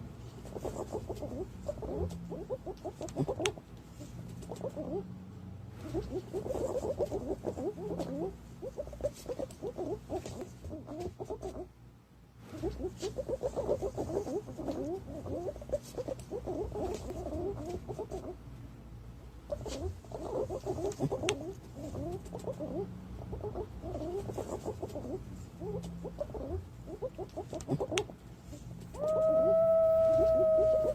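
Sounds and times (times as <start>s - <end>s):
pigeons calling: 28.9s - 30.9s.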